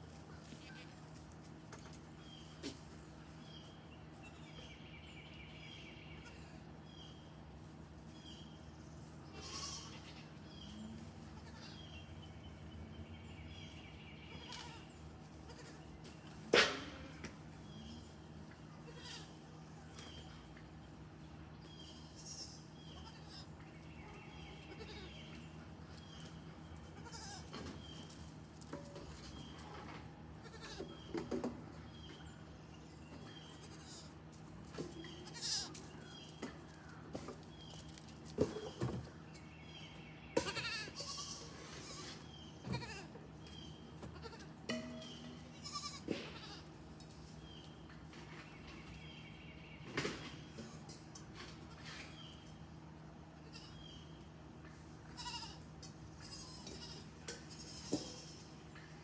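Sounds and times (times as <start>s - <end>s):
goats bleating: 9.3s - 10.5s, 11.2s - 12.1s, 14.3s - 15.9s, 18.7s - 19.5s, 21.8s - 23.6s, 24.5s - 25.4s, 26.8s - 27.6s, 30.4s - 31.1s, 33.4s - 34.2s, 35.0s - 35.9s, 40.4s - 43.4s, 44.0s - 46.8s, 55.0s - 58.6s.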